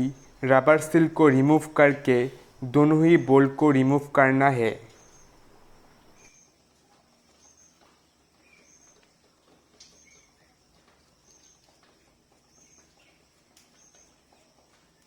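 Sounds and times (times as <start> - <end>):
faint high bird chirp: 0.0 - 6.6, 7.3 - 9.1, 9.8 - 10.6, 12.4 - 14.4.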